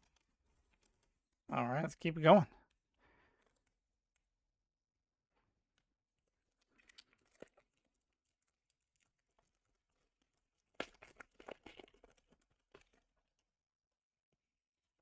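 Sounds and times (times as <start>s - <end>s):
foil wrapper tearing and crinkling: 6.4s - 13.1s.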